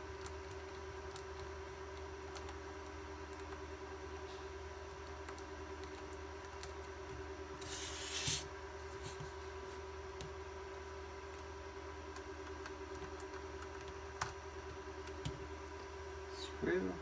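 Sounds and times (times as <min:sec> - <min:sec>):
steady electrical hum: 0:00.0 - 0:17.0
brief scraping rub: 0:07.6 - 0:09.2.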